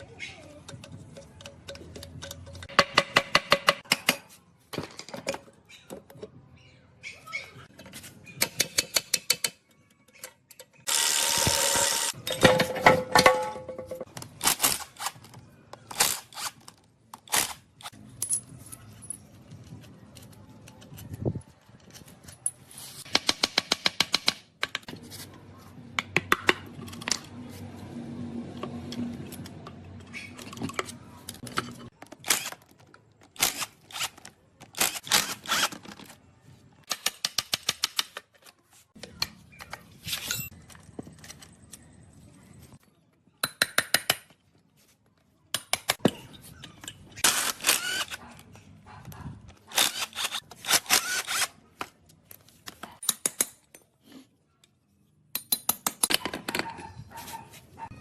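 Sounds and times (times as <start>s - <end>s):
metal tools clinking and scraping: 17.8s - 23.0s, 39.4s - 42.8s.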